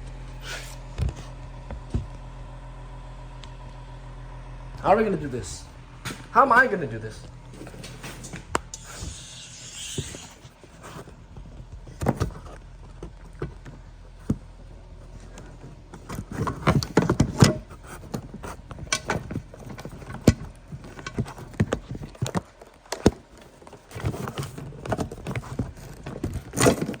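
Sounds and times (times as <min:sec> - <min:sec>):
objects knocking and rattling: 0:15.1 - 0:27.0.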